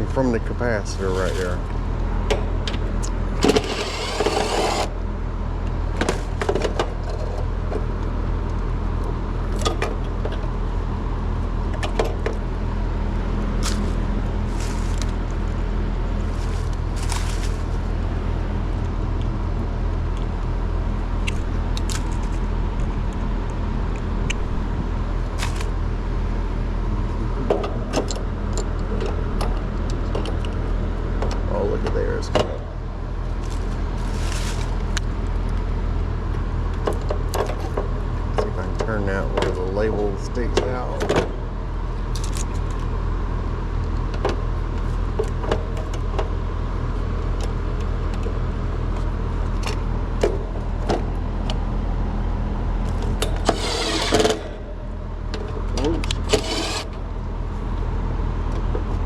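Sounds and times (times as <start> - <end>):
machinery humming: 0.0 - 45.1, 45.7 - 59.0
rustle: 16.3 - 17.8, 33.4 - 34.9.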